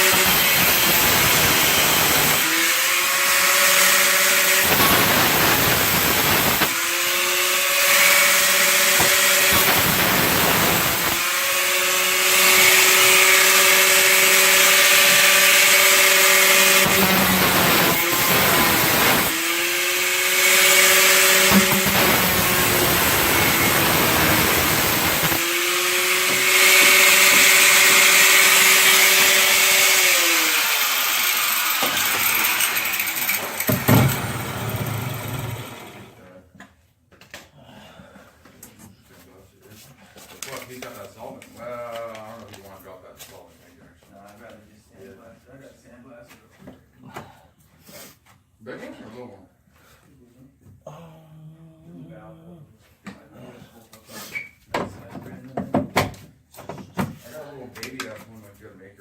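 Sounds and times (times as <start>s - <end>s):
power tool cutting sheet metal: 0.0s - 36.2s.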